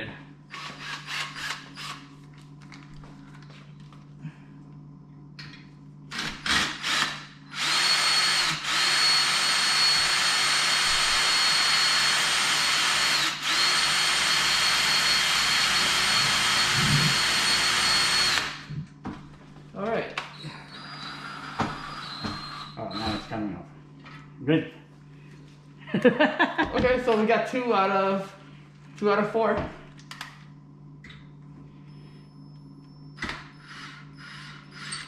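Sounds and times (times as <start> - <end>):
power drill whining: 0.5 - 2.1, 6.1 - 18.7, 20.3 - 23.4, 33.2 - 35.0.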